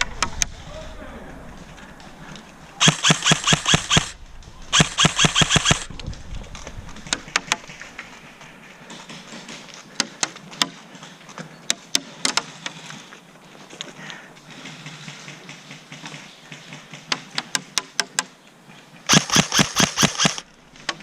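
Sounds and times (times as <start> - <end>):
airsoft gun firing: 2.8 - 5.9, 19.1 - 20.5.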